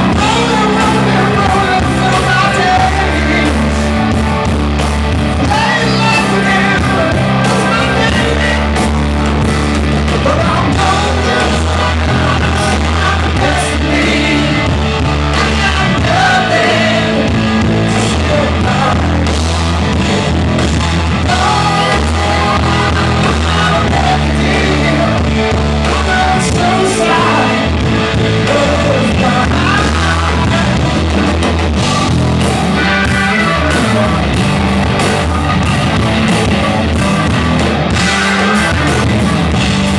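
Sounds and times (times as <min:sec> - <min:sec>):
person singing: 0:00.0 - 0:04.0, 0:05.4 - 0:09.0, 0:10.1 - 0:19.5, 0:21.2 - 0:31.3
bass guitar: 0:00.0 - 0:39.9
drums: 0:00.0 - 0:39.9
electric guitar: 0:00.0 - 0:39.9.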